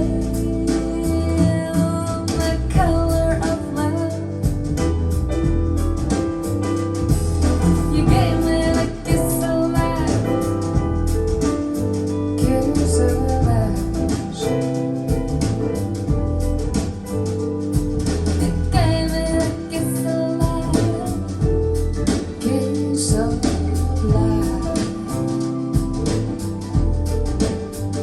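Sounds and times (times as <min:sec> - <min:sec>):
person singing: 0:00.0 - 0:04.4, 0:07.6 - 0:10.8, 0:12.4 - 0:14.9, 0:18.4 - 0:26.3
guitar: 0:00.0 - 0:28.0
heavy bass: 0:00.0 - 0:28.0
steady drum beat: 0:00.0 - 0:28.0.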